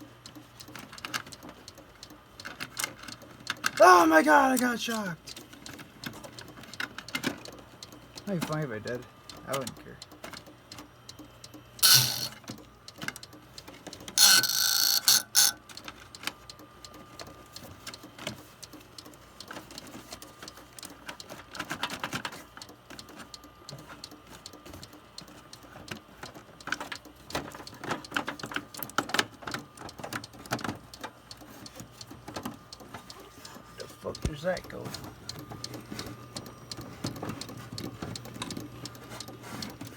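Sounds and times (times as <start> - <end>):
computer clicking and rattling: 4.5 - 10.5, 11.8 - 16.2
harsh grating bursts: 11.8 - 12.4, 14.2 - 15.6.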